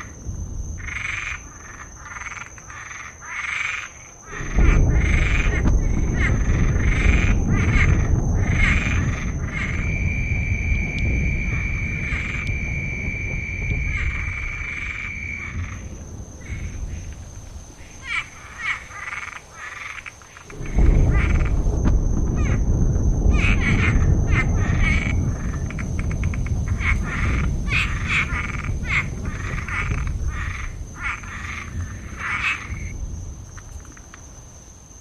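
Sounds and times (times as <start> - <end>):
distant thunder: 0.0 - 35.0
frogs croaking: 0.0 - 35.0
high insect trill: 0.0 - 35.0
rain rumble: 0.0 - 35.0.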